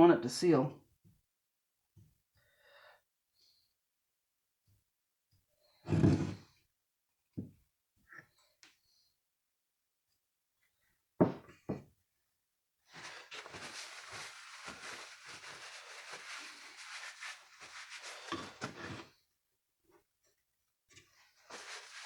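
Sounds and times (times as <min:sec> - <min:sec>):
sharp knocks on workbench: 0:11.2 - 0:11.8
rubbing and scraping: 0:13.0 - 0:19.1, 0:21.3 - 0:22.0.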